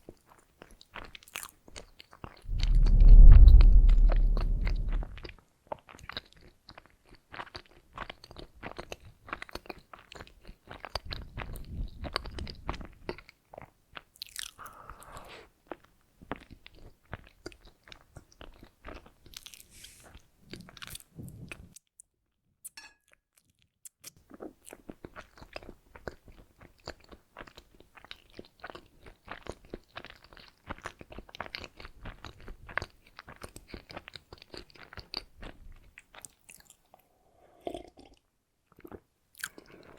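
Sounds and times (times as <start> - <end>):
chewing and biting doughnuts: 0.0 - 2.4, 5.3 - 21.1, 23.4 - 36.9, 37.6 - 39.9.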